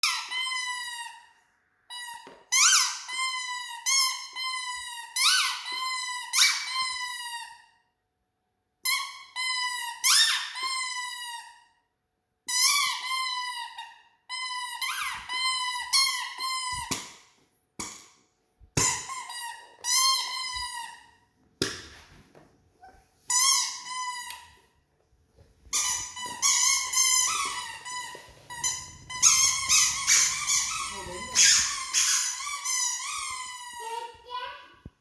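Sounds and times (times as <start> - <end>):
squeaky toy squeaking: 0.0 - 7.7, 8.8 - 11.6, 12.5 - 17.0, 18.8 - 21.1, 23.3 - 24.6, 25.7 - 34.5.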